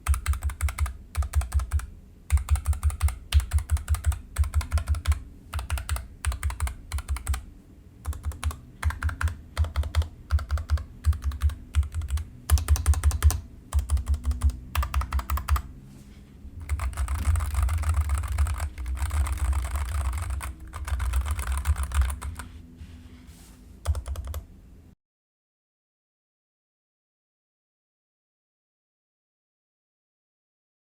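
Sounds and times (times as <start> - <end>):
mechanical keyboard typing: 0.0 - 15.7, 16.6 - 22.5, 23.8 - 24.5.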